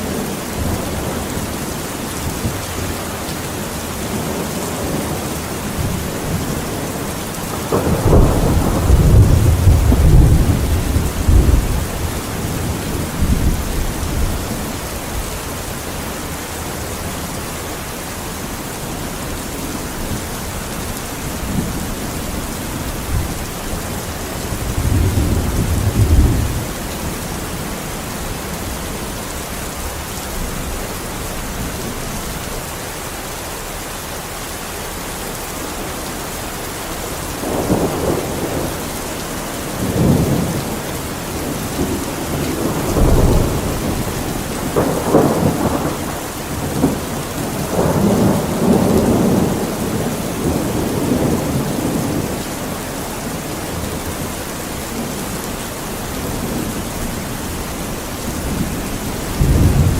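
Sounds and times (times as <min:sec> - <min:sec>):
steady rain: 0:00.0 - 0:59.9
rolling thunder: 0:04.0 - 0:15.2, 0:20.0 - 0:29.0, 0:37.4 - 0:39.0, 0:39.6 - 0:54.3, 0:56.2 - 0:59.9.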